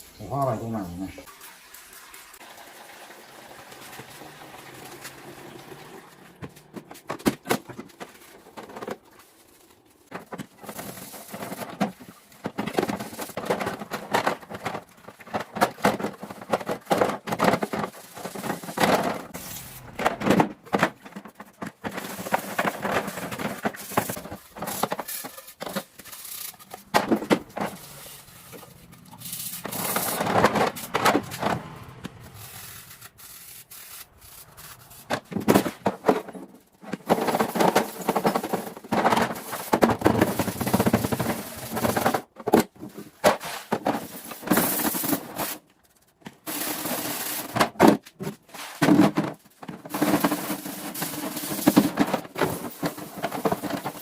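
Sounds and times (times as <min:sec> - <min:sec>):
scrubbing and scraping strokes: 0:21.8 - 0:35.8.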